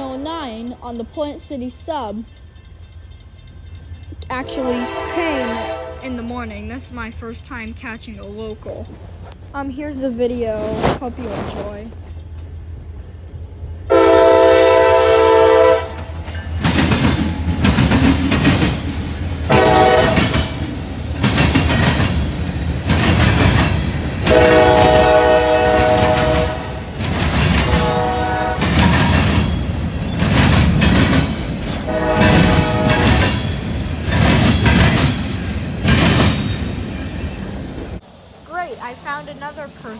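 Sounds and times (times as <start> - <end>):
locomotive engine rumbling: 0.0 - 39.9
locomotive air horn blasts: 4.3 - 6.4, 13.9 - 16.1, 19.5 - 20.4, 24.2 - 26.9, 27.6 - 29.1, 31.9 - 33.4
wheels clattering over rails: 16.0 - 25.1, 25.7 - 37.6.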